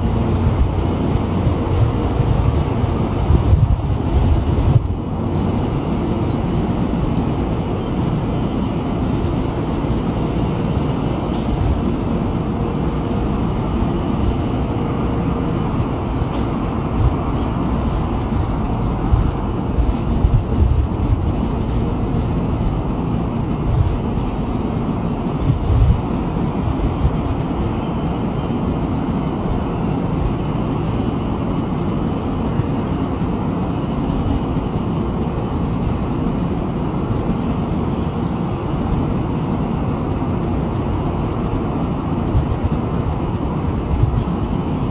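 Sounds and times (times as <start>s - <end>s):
train knocks: 0.0s - 33.1s
train rumbling: 0.0s - 44.9s.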